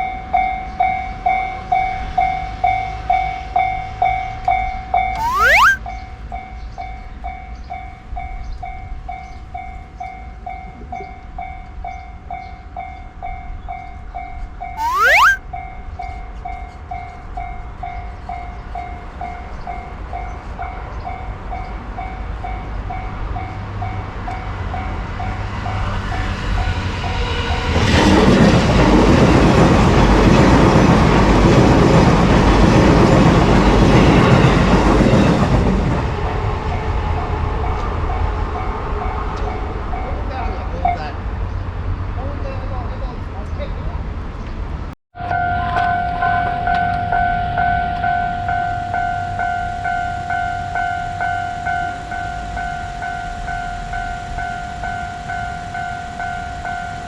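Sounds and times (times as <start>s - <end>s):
railroad crossing electronic bell: 0.0s - 15.4s, 45.2s - 57.0s
short rising tone: 5.2s - 5.8s, 14.8s - 15.4s.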